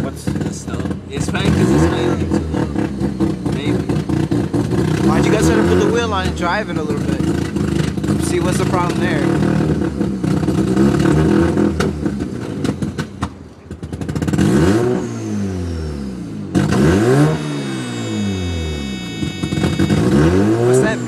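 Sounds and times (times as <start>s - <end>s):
rotary engine idling rough: 0.0s - 21.0s
steady electronic beep: 16.8s - 21.0s.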